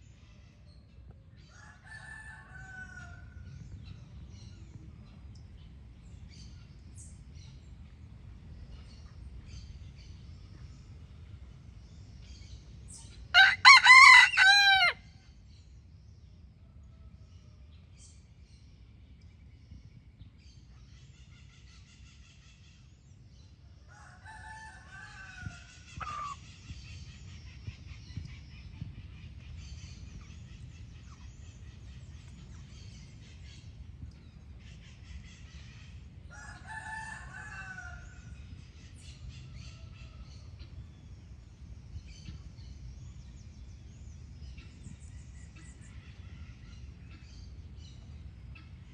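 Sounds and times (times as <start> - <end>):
rooster crowing: 13.4 - 15.0
low background rumble: 14.6 - 48.9.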